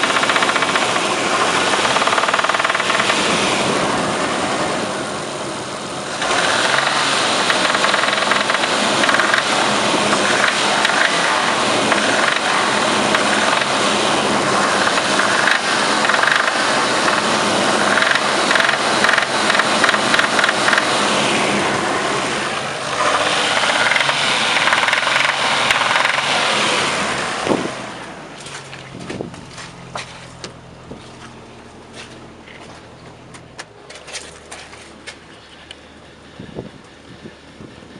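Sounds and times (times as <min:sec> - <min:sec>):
engine clicks: 0:00.0 - 0:03.3, 0:06.2 - 0:09.5, 0:10.1 - 0:11.3, 0:11.9 - 0:12.5, 0:13.1 - 0:13.8, 0:14.7 - 0:20.9, 0:23.0 - 0:26.3
engine running with a knock: 0:00.0 - 0:03.5, 0:06.2 - 0:13.9, 0:14.5 - 0:21.1, 0:23.1 - 0:26.6, 0:28.4 - 0:35.6.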